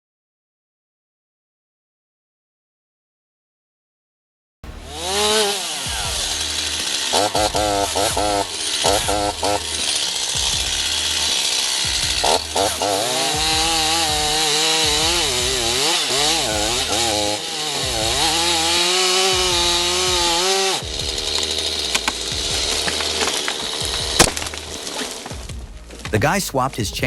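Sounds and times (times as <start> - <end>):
chainsaw cutting at high revs: 4.7 - 25.8.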